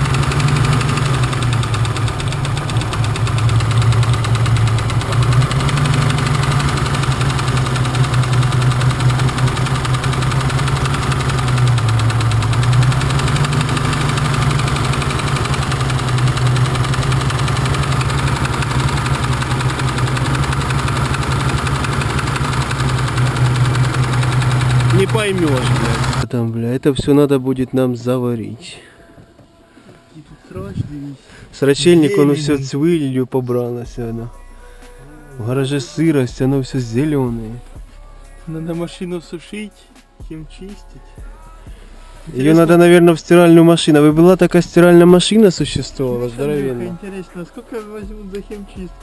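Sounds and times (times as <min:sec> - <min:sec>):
car engine idling with knock: 0:00.0 - 0:26.2, 0:43.8 - 0:49.0.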